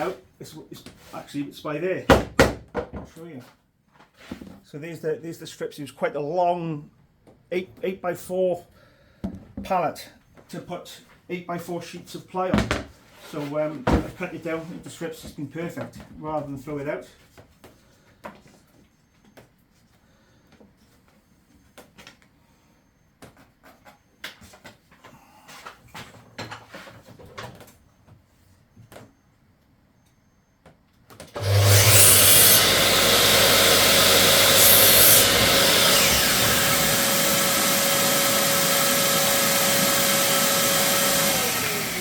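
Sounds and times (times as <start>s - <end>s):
power saw cutting wood: 31.4s - 42.0s
saw motor winding down: 31.4s - 42.0s.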